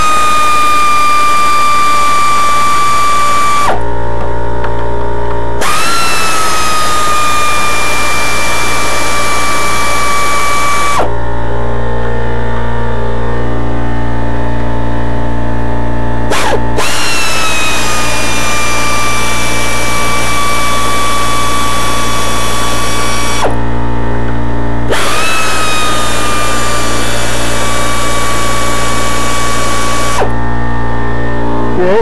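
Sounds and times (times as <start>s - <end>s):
pneumatic air tool whining: 0.0s - 3.9s, 5.6s - 11.2s, 16.2s - 23.7s, 24.8s - 30.4s
air compressor humming: 0.0s - 32.0s.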